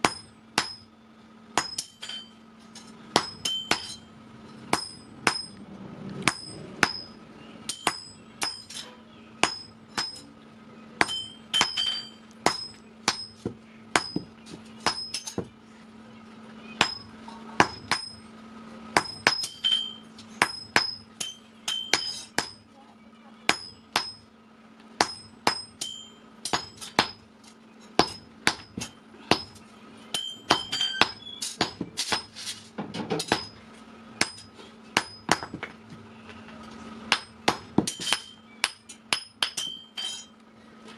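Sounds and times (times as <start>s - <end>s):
hammer striking steel on anvil: 0.0s - 0.9s, 1.6s - 5.6s, 6.2s - 10.3s, 11.0s - 15.5s, 16.8s - 18.2s, 19.0s - 22.7s, 23.5s - 24.3s, 25.0s - 27.3s, 28.0s - 32.4s, 33.2s - 33.6s, 34.2s - 35.7s, 37.1s - 40.4s.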